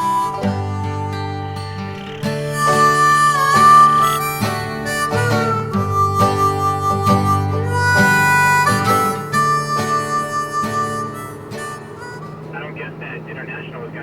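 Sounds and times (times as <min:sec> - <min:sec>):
harmonica playing: 0:00.0 - 0:14.0
strummed acoustic guitar: 0:00.0 - 0:14.0.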